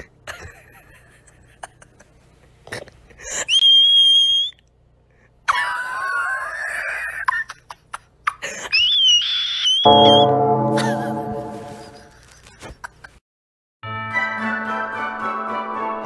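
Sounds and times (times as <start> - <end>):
high-pitched whistle-like squeals: 9.0 - 10.5.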